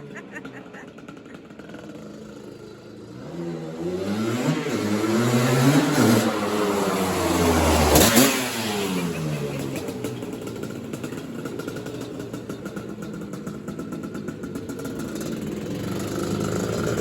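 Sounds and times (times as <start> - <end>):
quad engine revving: 0.0 - 17.0.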